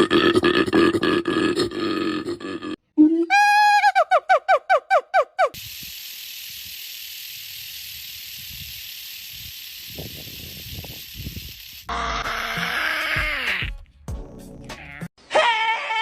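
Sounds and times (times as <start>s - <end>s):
snake hissing: 5.6s - 11.9s
animal cry with falling pitch: 11.9s - 13.8s, 14.7s - 16.0s.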